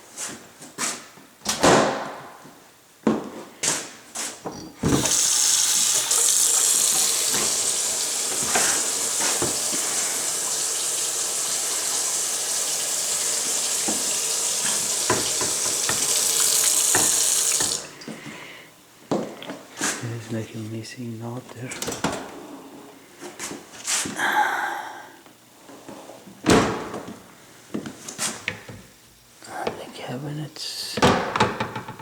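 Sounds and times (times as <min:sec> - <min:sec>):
faucet turning on and off: 0:04.8 - 0:18.0
water running into sink: 0:04.8 - 0:18.1.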